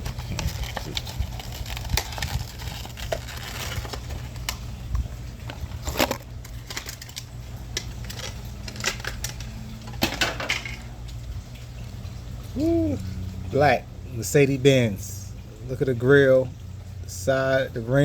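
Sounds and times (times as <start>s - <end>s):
plastic packaging cracking open: 0.0s - 4.7s, 5.8s - 9.5s
plastic clicks and crinkles: 0.0s - 11.2s.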